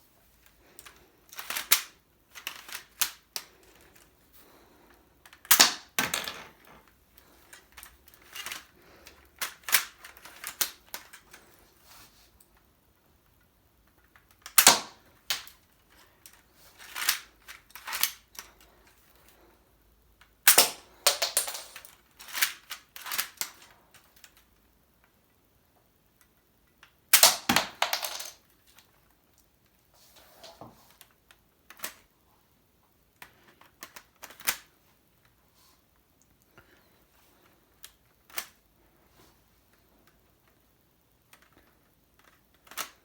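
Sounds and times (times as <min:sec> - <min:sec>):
plastic toy parts clicking: 0:00.8 - 0:04.1, 0:07.5 - 0:11.4, 0:16.2 - 0:18.5, 0:20.2 - 0:24.4, 0:31.7 - 0:32.0, 0:33.2 - 0:34.7, 0:37.8 - 0:38.6, 0:42.2 - 0:43.0
plastic parts snapping and rattling: 0:05.3 - 0:06.9, 0:14.2 - 0:15.6, 0:20.5 - 0:24.4, 0:27.1 - 0:28.4.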